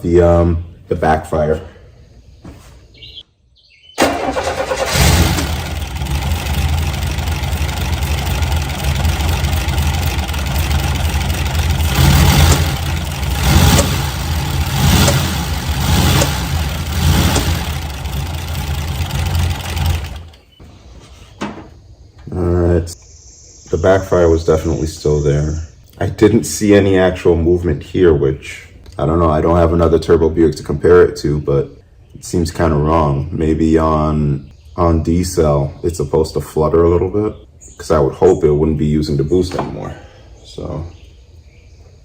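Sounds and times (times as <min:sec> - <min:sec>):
engine backfiring: 0:04.0 - 0:20.5
turbocharged car engine running: 0:04.8 - 0:20.4.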